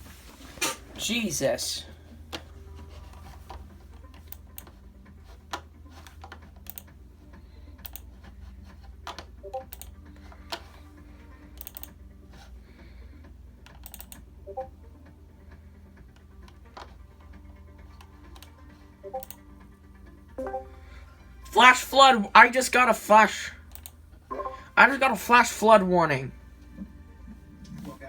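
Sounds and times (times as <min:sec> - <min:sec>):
keyboard typing: 0:13.7 - 0:14.7, 0:19.1 - 0:19.4.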